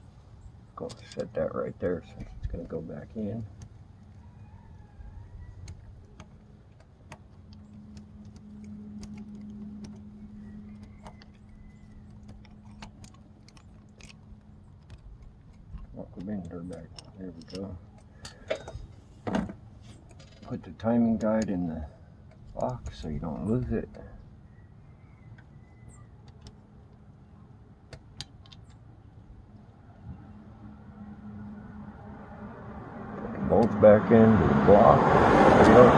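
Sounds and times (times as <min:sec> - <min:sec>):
steady low hum: 0:00.0 - 0:35.0
metal parts and tools clicking: 0:11.0 - 0:19.0.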